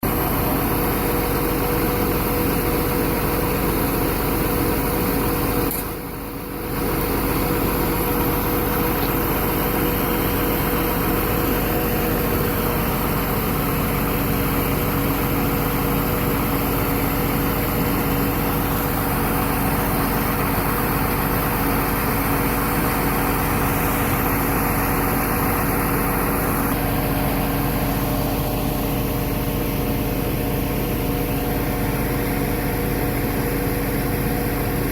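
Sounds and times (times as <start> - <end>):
baler engine running: 0.0 - 34.9.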